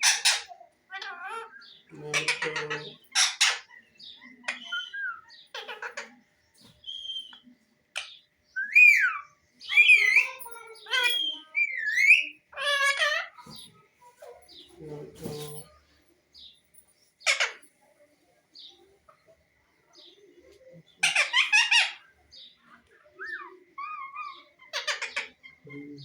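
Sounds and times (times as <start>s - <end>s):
parrot squawking and whistling: 8.6s - 13.2s.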